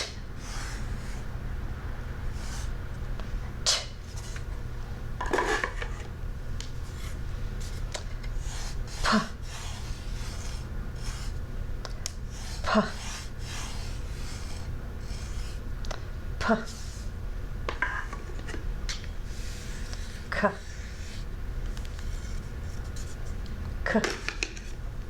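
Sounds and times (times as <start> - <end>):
steady low hum: 0.0 - 25.0
soft rubbing and scraping: 19.2 - 23.4.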